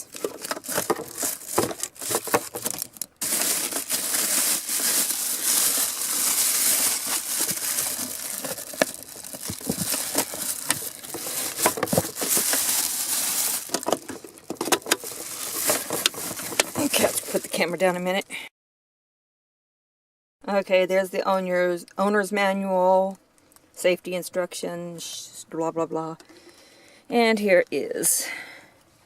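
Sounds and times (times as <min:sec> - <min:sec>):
packaging crinkling and rustling: 0:00.0 - 0:17.8.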